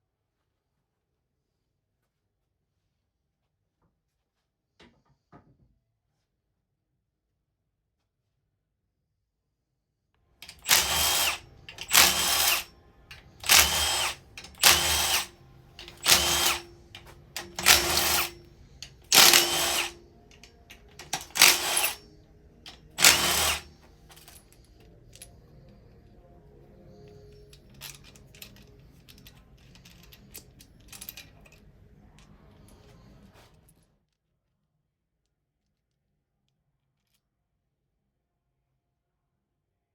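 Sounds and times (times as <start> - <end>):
power tool bursts: 10.4 - 22.1, 22.7 - 23.8
faint clinks and handling: 10.4 - 33.9.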